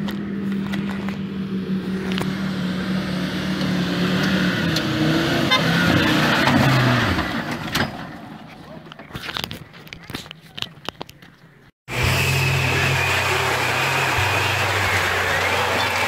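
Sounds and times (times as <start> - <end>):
off-road engine running under load: 0.0 - 8.7, 11.9 - 16.0.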